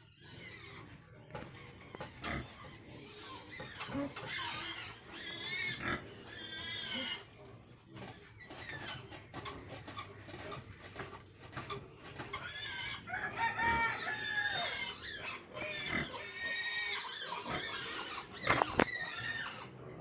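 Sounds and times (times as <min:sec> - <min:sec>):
piglets squealing: 0:00.0 - 0:07.4, 0:11.5 - 0:20.0.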